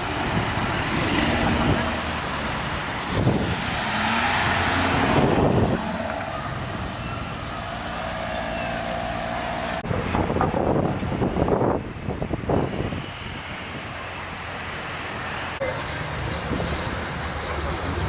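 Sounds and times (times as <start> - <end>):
supercar engine: 0.0 - 11.3
street noise: 0.0 - 18.0.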